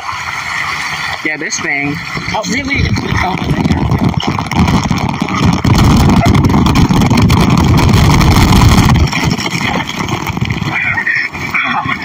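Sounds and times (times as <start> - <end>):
water rushing and splashing: 0.0 - 12.0.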